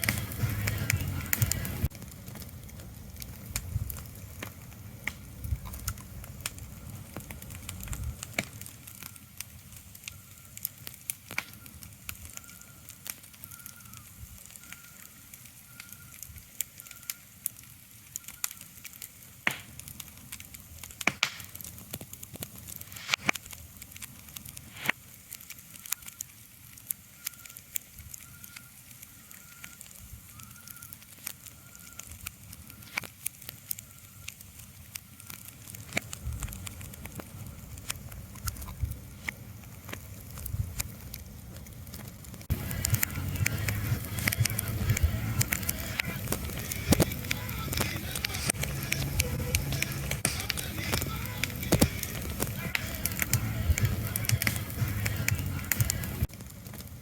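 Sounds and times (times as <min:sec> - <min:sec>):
crackling with sharp pops: 0:00.0 - 0:57.0
low rumble: 0:42.4 - 0:56.3.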